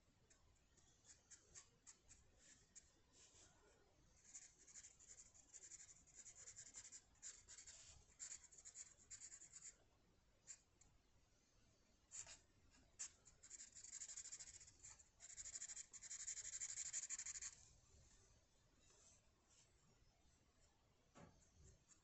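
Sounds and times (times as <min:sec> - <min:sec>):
drawing tool scratching paper: 0:04.2 - 0:09.7, 0:13.0 - 0:17.6.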